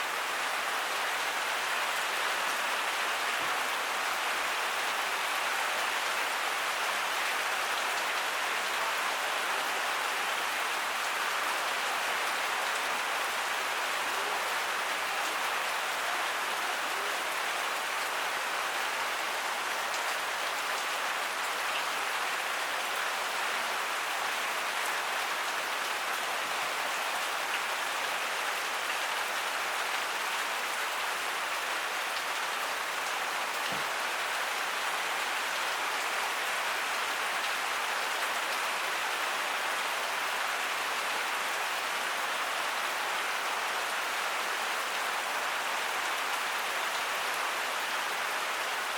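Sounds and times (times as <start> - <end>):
heavy rain falling: 0.0 - 48.9.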